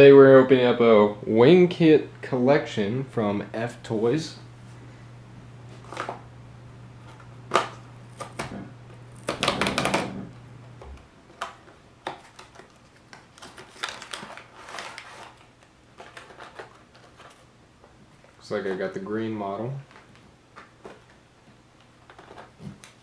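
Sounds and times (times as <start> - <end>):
packaging clicks and snaps: 11.3 - 17.4, 21.8 - 23.0
plastic packaging crinkling: 11.3 - 23.0.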